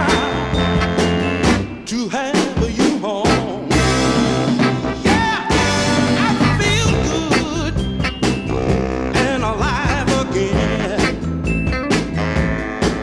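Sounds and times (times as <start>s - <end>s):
soul record playing: 3.4s - 13.0s.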